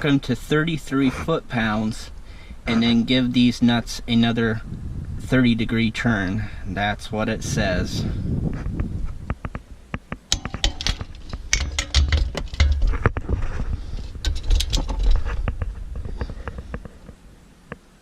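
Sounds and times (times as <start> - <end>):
wrench clicking on metal: 10.3 - 12.8
low thumps: 10.3 - 16.9.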